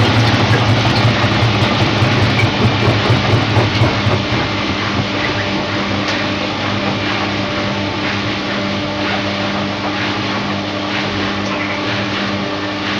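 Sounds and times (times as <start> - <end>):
washing machine running: 0.0 - 7.8.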